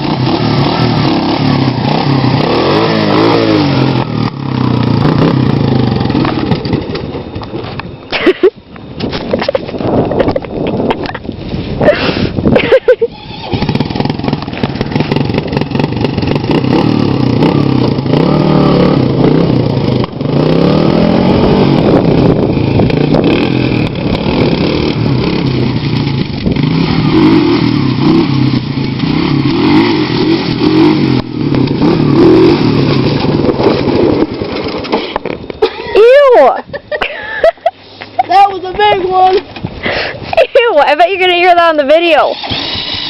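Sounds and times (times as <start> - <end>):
quad bike engine revving: 0.0 - 7.8, 12.2 - 35.4, 41.4 - 43.0.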